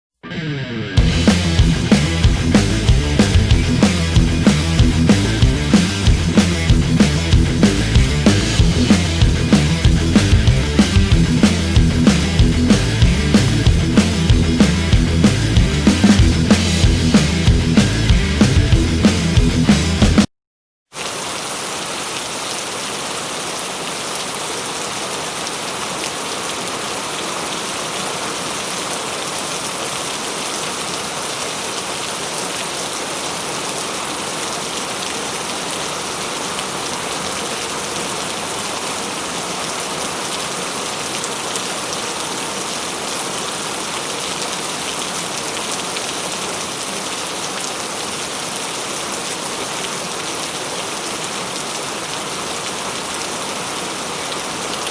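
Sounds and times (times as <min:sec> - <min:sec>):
heavy rain falling: 0:01.0 - 0:20.3.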